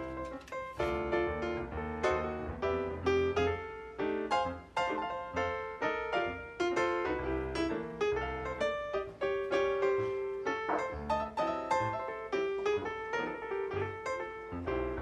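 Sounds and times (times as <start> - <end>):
piano playing light melody: 0.0 - 15.0.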